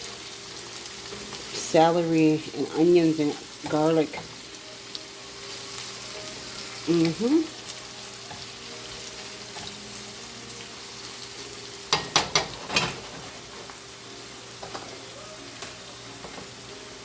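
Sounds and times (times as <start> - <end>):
vegetables sizzling in oil: 0.0 - 17.0
stirring knocks in pan: 11.9 - 13.4.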